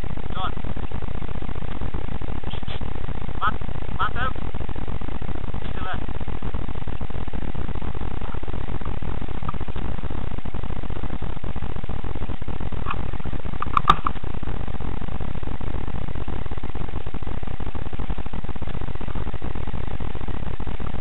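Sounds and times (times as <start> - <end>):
low rumbling noise: 0.0 - 21.0.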